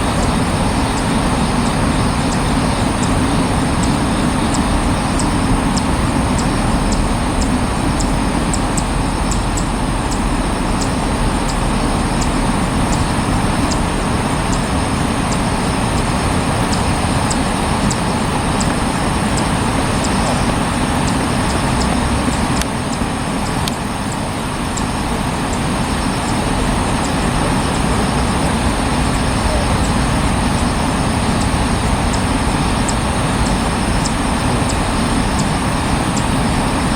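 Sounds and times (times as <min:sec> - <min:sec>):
faint high ticks: 0:00.0 - 0:28.5
outdoor background roar: 0:00.0 - 0:36.9.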